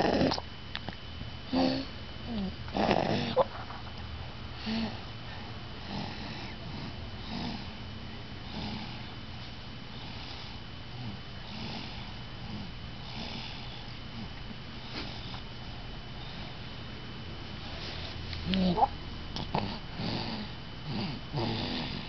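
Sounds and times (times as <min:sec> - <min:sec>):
snoring: 0:00.0 - 0:00.4, 0:01.5 - 0:03.4, 0:05.8 - 0:07.8, 0:08.5 - 0:09.1, 0:10.0 - 0:14.3, 0:18.5 - 0:22.0.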